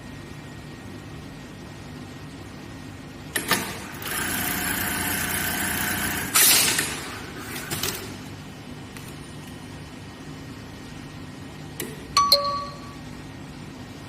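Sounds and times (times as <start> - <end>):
sewing machine running: 3.5 - 8.1
steady low hum: 8.0 - 14.0.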